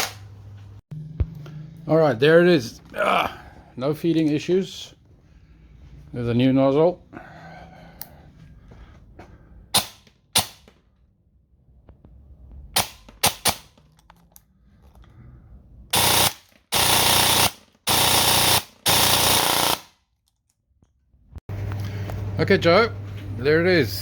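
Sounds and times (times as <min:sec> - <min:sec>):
airsoft gun full-auto bursts: 0:15.9 - 0:19.9.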